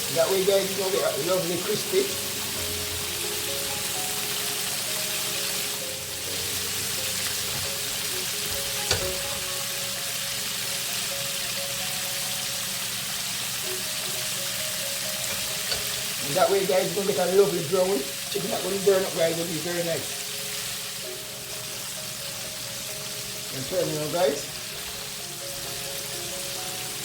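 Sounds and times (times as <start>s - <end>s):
chicken deep-frying in oil: 0.0s - 27.0s.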